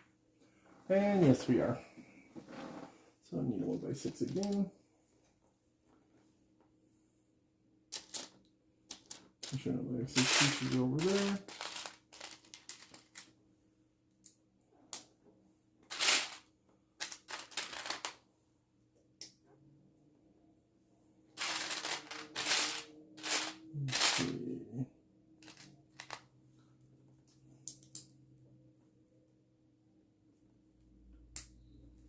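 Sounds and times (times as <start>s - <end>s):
loose plastic pieces rattling: 7.9s - 13.3s, 15.9s - 18.2s, 21.4s - 24.4s, 25.4s - 26.2s.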